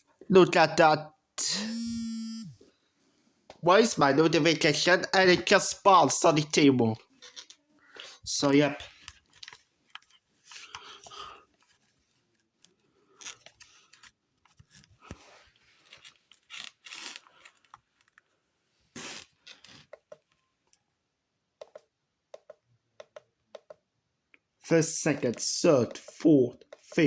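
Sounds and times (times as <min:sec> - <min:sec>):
handling rustles and scrapes: 0:08.8 - 0:20.3.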